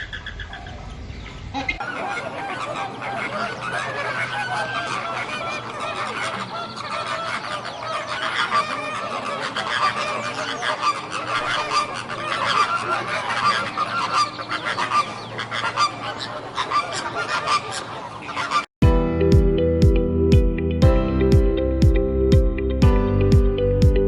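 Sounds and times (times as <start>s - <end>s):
flamingos honking: 1.6s - 18.7s.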